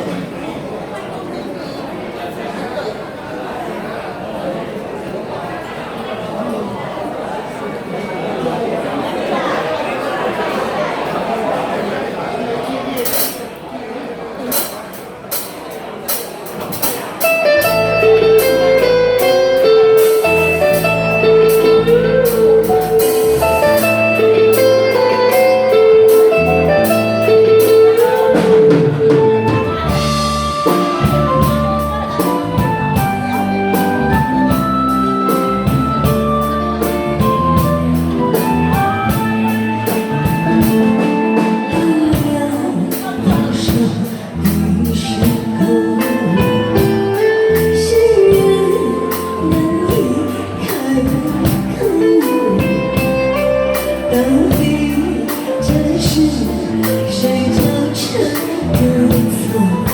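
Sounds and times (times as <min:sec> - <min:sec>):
instrumental music with drums and guitar: 0:14.5 - 0:59.9.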